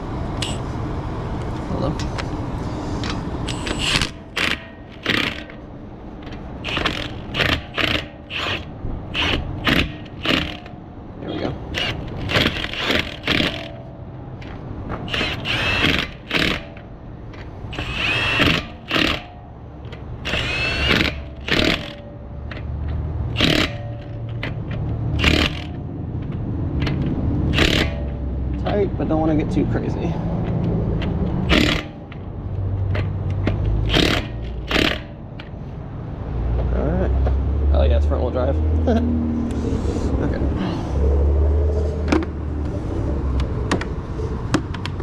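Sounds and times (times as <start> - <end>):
impact wrench bursts: 0.4 - 0.7, 3.4 - 10.8, 11.6 - 14.0, 14.9 - 16.9, 17.7 - 22.7, 23.3 - 28.4, 31.0 - 32.3, 33.4 - 35.6.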